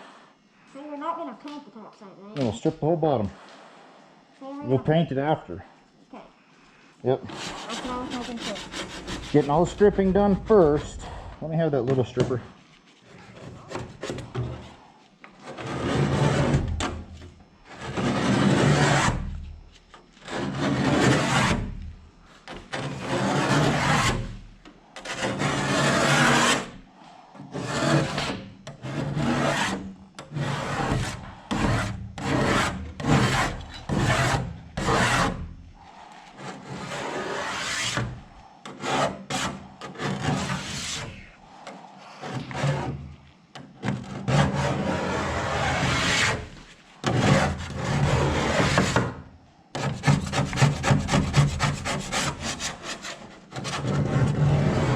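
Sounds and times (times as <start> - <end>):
paint scraped off boat hull: 7.2 - 11.1, 15.4 - 17.0, 17.7 - 19.2, 22.7 - 24.4, 25.0 - 26.7, 27.5 - 35.5, 36.3 - 41.3, 43.9 - 49.2.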